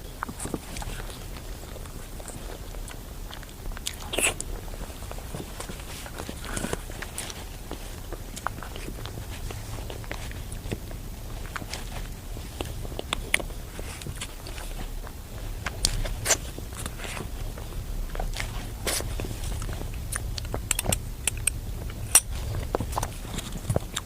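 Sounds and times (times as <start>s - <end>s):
low steady hum: 0.0s - 24.0s
soft chewing: 0.0s - 24.0s
wet mouth clicks: 3.4s - 4.5s, 18.2s - 24.0s.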